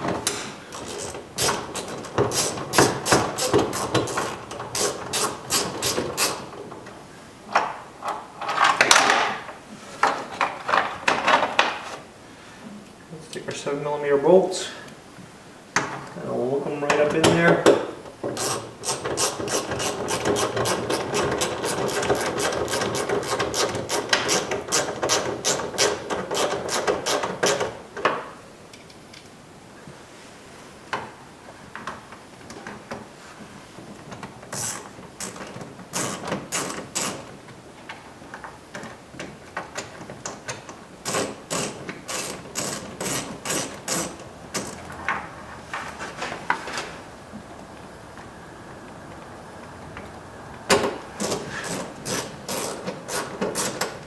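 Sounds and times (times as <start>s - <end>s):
ratchet clicking: 0.2s - 6.4s, 18.4s - 27.6s, 34.6s - 37.2s, 41.0s - 44.8s, 51.2s - 54.0s.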